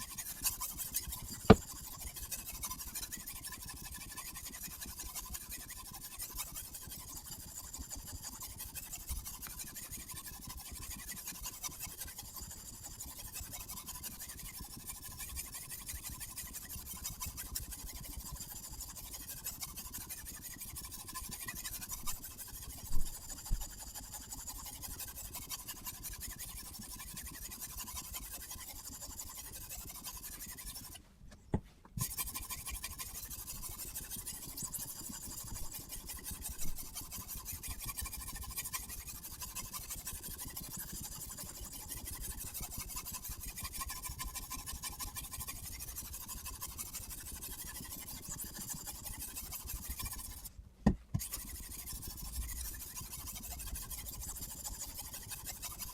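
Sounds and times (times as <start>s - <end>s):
sharpening stone scraping knife edge: 0.0s - 3.4s, 25.8s - 31.0s, 32.0s - 39.4s, 46.2s - 50.5s, 51.2s - 55.8s.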